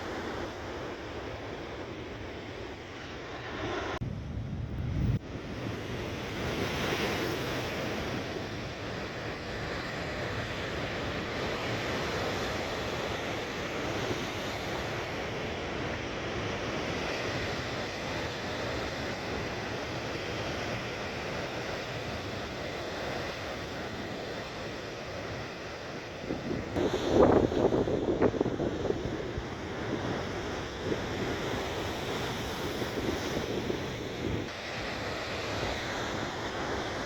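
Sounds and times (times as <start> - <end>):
wind buffeting microphone: 0.0 - 13.0, 25.2 - 37.0
rough sea surf breaking: 0.0 - 37.0.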